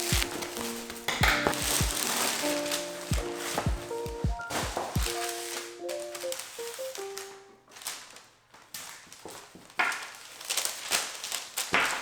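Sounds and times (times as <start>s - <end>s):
soft musical notes: 0.0s - 7.7s
wrapping paper rustling and crinkling: 0.0s - 12.0s.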